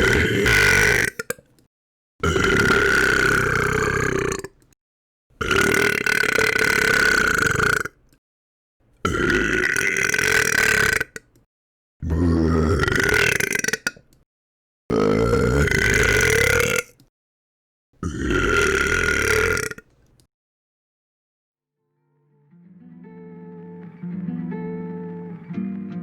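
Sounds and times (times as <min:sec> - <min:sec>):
long belches: 0:00.0 - 0:01.3, 0:02.2 - 0:04.6, 0:05.4 - 0:08.0, 0:09.1 - 0:11.2, 0:12.0 - 0:14.0, 0:14.9 - 0:17.0, 0:18.0 - 0:19.9.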